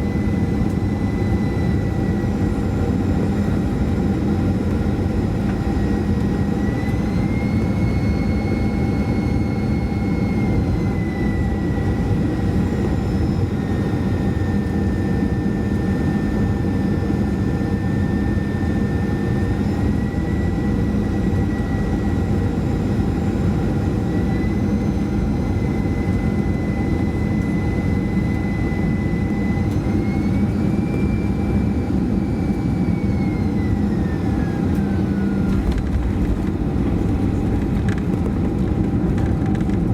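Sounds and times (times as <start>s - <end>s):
jet engine whine: 0.0s - 39.9s
aircraft cabin air rush: 26.2s - 39.9s.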